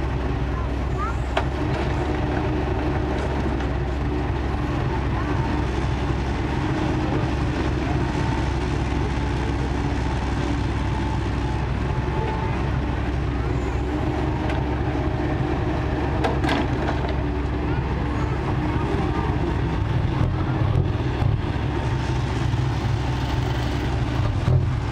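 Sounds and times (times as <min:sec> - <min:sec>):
excavator diesel engine running: 0:00.0 - 0:24.9.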